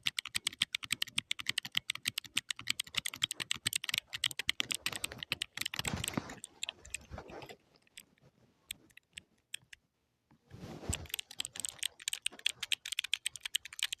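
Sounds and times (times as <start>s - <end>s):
typing on computer keyboard: 0.0s - 8.1s, 10.9s - 14.0s.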